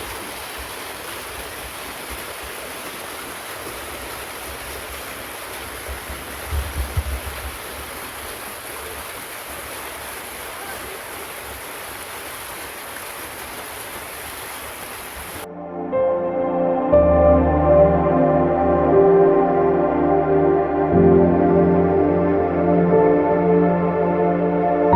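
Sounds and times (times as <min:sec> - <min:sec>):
waterfall rushing: 0:00.0 - 0:15.5.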